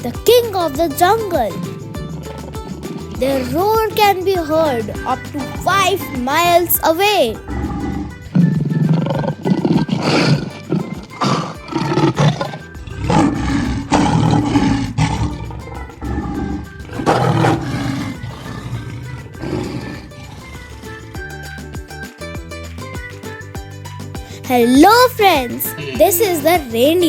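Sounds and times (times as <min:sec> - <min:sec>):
background music: 0:00.0 - 0:27.0
lion roaring: 0:07.4 - 0:08.2, 0:08.8 - 0:21.0.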